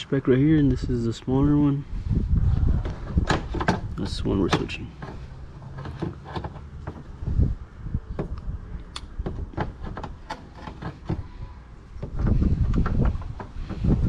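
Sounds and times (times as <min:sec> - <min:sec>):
low rumble: 0:00.5 - 0:04.3.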